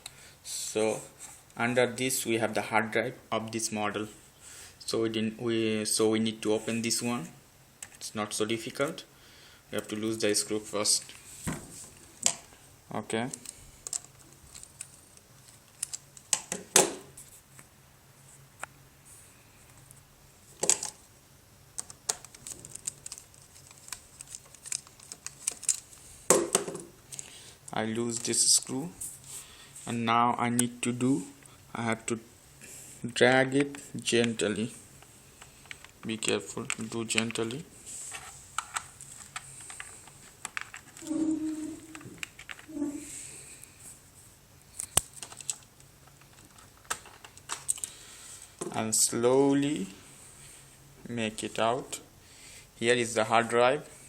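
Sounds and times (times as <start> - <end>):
plastic clicks and rattles: 44.8 - 47.9.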